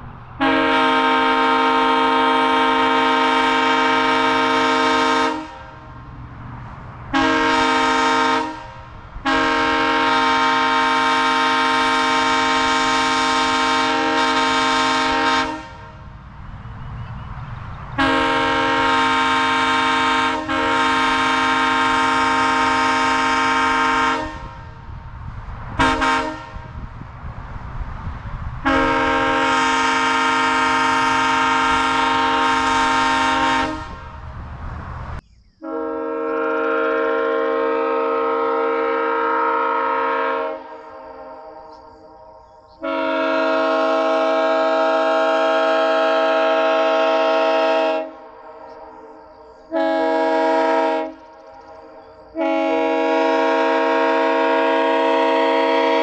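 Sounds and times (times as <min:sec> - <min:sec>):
three-chime train horn: 0:00.4 - 0:05.6, 0:07.2 - 0:08.7, 0:09.3 - 0:15.8, 0:18.0 - 0:24.5, 0:28.7 - 0:34.0, 0:35.6 - 0:41.9, 0:42.8 - 0:48.8, 0:52.3 - 0:56.0.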